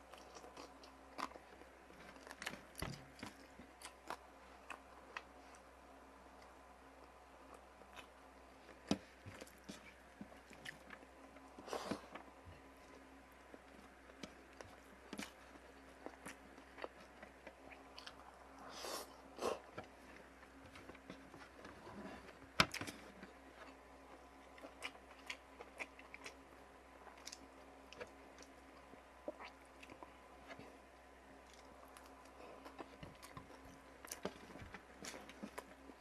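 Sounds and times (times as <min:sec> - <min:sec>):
person chewing: 0:23.6 - 0:26.4.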